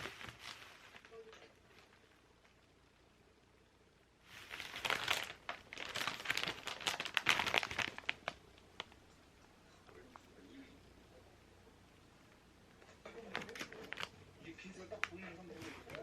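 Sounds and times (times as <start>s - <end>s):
packaging crinkling: 0.0s - 2.0s, 4.3s - 9.1s, 13.2s - 14.2s.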